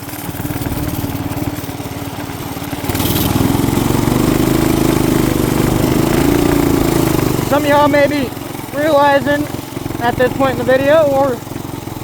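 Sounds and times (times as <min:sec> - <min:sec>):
mini-bike engine revving: 0:00.0 - 0:12.0.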